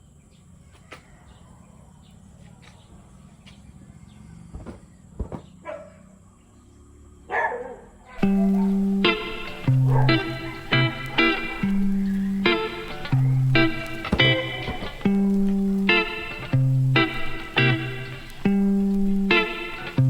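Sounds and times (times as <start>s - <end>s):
dog barking: 5.6s - 6.2s, 7.3s - 19.8s
plucked guitar music: 8.2s - 20.0s.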